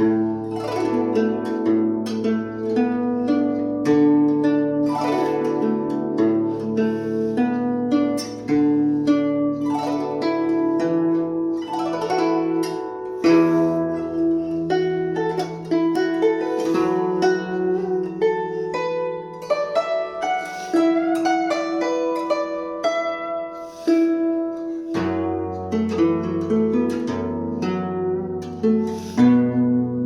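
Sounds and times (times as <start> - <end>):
plucked zither music: 0.0 - 30.0.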